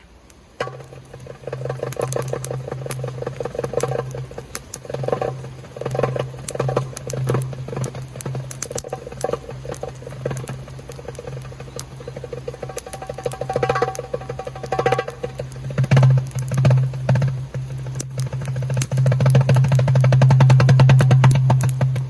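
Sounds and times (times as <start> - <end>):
campfire crackling: 0.0 - 22.0
rain patter: 0.0 - 22.0
darbuka finger rolls: 0.6 - 22.0.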